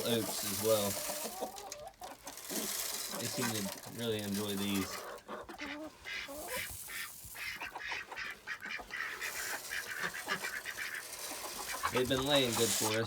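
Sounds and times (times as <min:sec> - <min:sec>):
poultry calling: 0:04.8 - 0:13.0.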